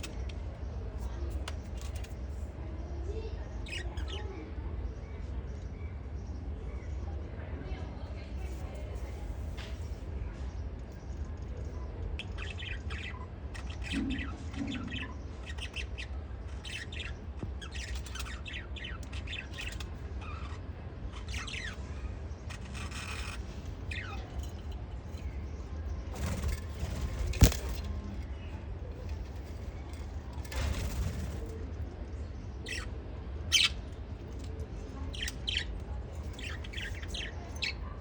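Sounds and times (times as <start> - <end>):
steady low hum: 8.2 - 38.0
lovebirds chirping: 11.8 - 38.0.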